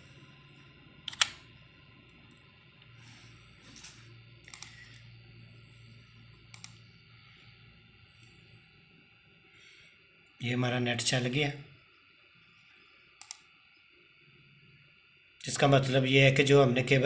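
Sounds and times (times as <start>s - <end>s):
faint steady hum: 0.0s - 17.0s
computer mouse clicks: 1.1s - 1.4s, 4.4s - 5.0s, 6.5s - 6.8s, 13.2s - 13.5s.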